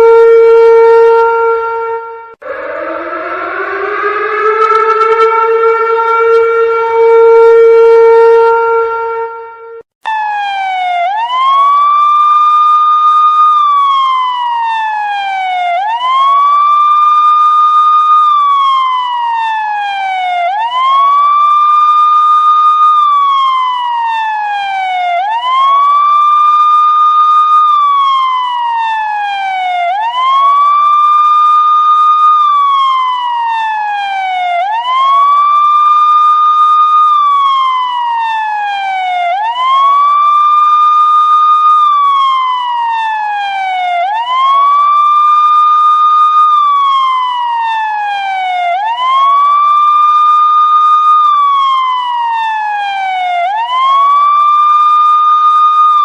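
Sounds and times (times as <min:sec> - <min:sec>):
steady horn-like tone: 0:00.0 - 0:09.8
wailing siren: 0:00.0 - 0:56.0.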